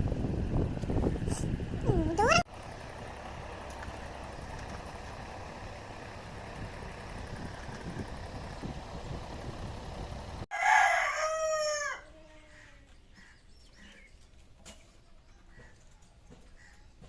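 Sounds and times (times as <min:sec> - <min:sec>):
steady rumbling noise: 0:00.0 - 0:10.5
rooster crowing: 0:10.5 - 0:12.1.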